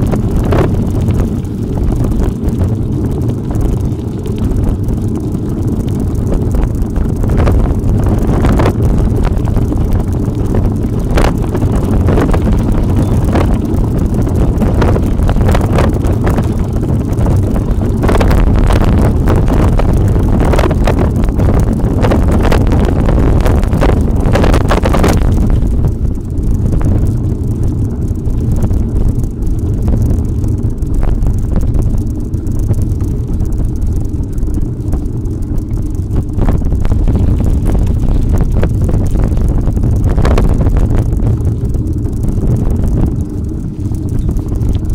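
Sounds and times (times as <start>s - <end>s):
bike clicking and knocking: 0.0s - 44.9s
heavy low rumble: 0.0s - 44.9s
wind buffeting microphone: 0.0s - 44.9s.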